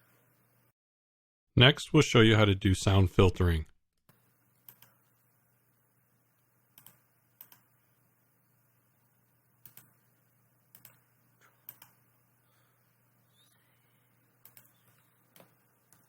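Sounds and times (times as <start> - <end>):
faint computer clicks: 4.1 - 5.1, 6.7 - 7.7, 9.6 - 10.0, 10.7 - 12.0, 14.4 - 16.0.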